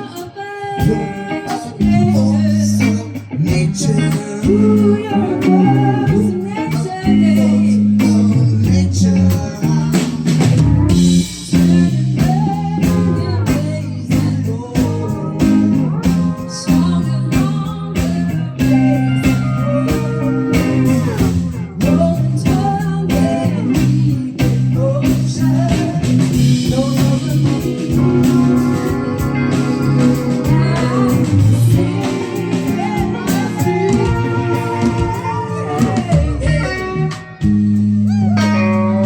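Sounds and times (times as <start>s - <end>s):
live band playing blues-rock: 0.0s - 39.0s
lead guitar solo with bending notes: 0.8s - 8.6s, 15.0s - 21.9s, 27.2s - 39.0s.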